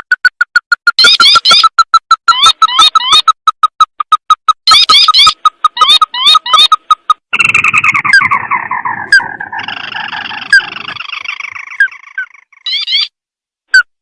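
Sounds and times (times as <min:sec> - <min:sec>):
bird chattering trill: 0:00.0 - 0:13.2.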